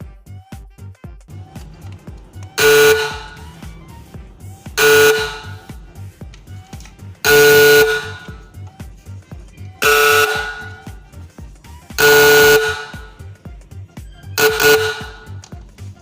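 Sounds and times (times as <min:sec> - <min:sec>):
music with steady beat: 0:00.0 - 0:16.0
factory horn blasts: 0:01.3 - 0:08.6, 0:09.8 - 0:11.2, 0:12.0 - 0:13.4, 0:14.3 - 0:15.5.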